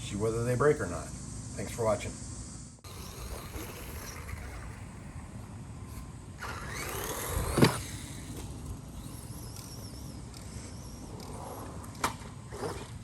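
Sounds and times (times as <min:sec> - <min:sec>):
electric motor whining: 0:02.8 - 0:13.0.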